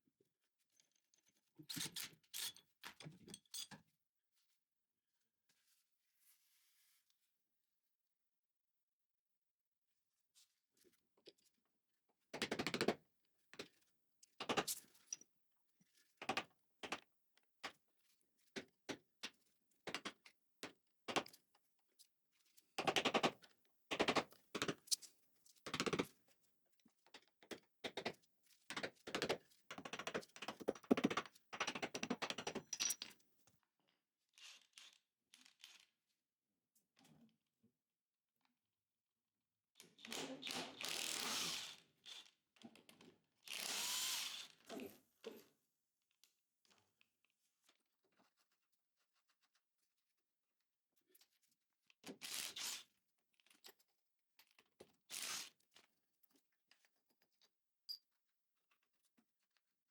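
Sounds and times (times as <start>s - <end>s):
hand tool rapid clicking: 23.9s - 24.7s, 28.7s - 32.6s.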